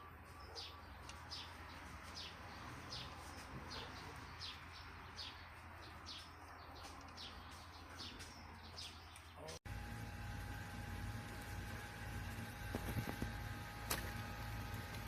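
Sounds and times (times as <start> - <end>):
bird chirping: 0.0 - 9.6
steady low hum: 9.7 - 15.0.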